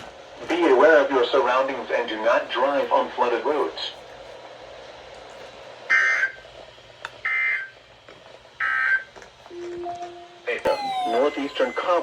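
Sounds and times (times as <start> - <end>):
digital data tone bursts: 9.5 - 12.0.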